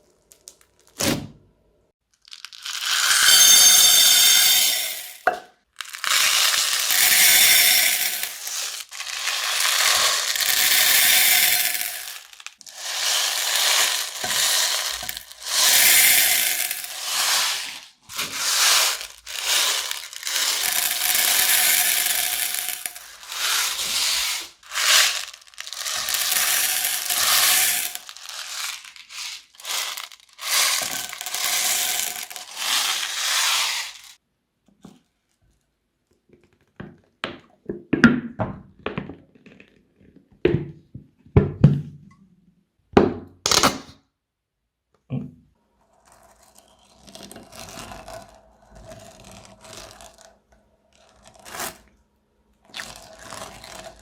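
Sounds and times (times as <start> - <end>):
crunchy slime crackling: 52.7 - 54.0.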